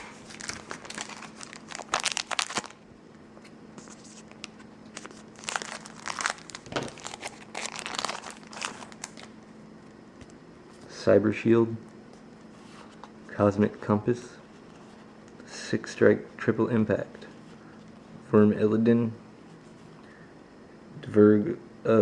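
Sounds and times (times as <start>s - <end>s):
foil wrapper crinkling and tearing: 0.0s - 2.8s, 4.2s - 9.4s.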